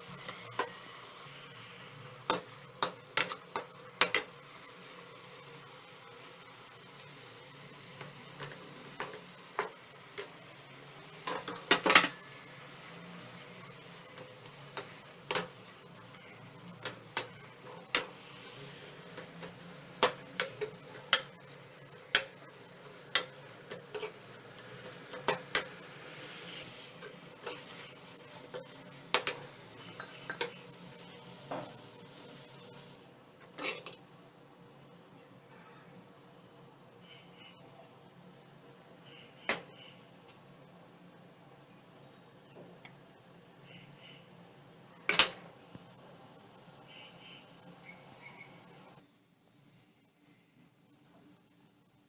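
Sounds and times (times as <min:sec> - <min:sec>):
faint sizzle: 0:00.0 - 0:52.0
spatula scraping a pan: 0:11.3 - 0:30.6.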